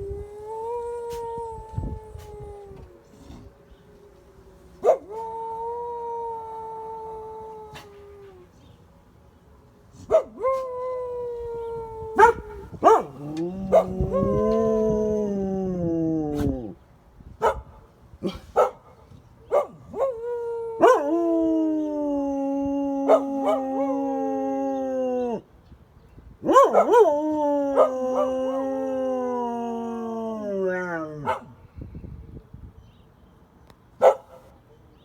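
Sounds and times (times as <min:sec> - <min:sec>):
dogs howling: 0:00.0 - 0:08.5, 0:10.1 - 0:16.8, 0:19.6 - 0:25.4, 0:26.4 - 0:31.5.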